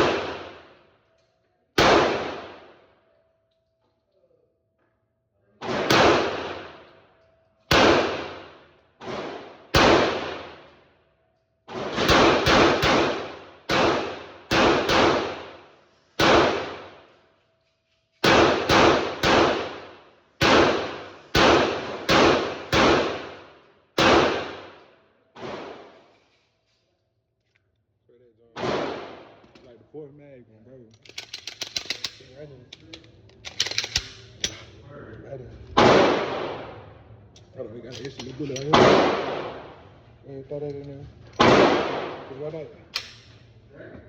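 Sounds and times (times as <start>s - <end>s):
airsoft pistol shots: 7.7s - 10.6s, 11.7s - 15.6s, 16.2s - 17.0s, 18.2s - 23.4s, 24.0s - 24.7s, 41.4s - 42.3s.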